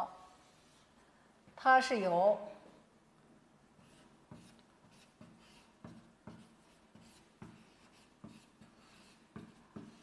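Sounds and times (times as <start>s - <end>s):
writing scratches on a board: 3.8s - 10.0s.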